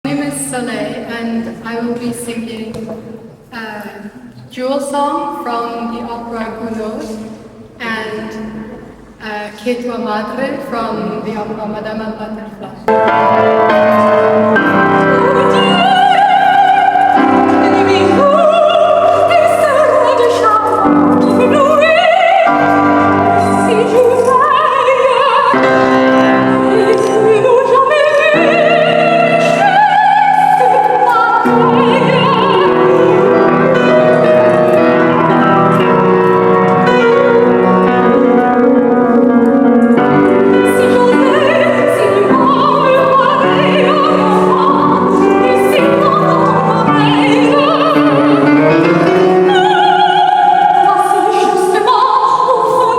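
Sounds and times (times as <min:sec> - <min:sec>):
piano accompaniment: 0:12.8 - 0:52.9
soprano singing opera: 0:13.0 - 0:38.5, 0:40.1 - 0:52.9.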